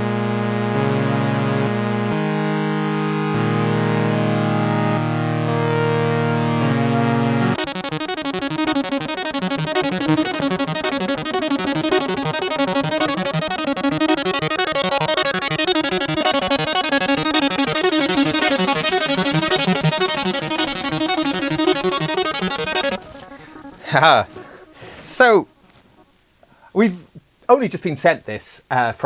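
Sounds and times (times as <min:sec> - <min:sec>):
flanged synth-like notes: 0:03.5 - 0:26.0.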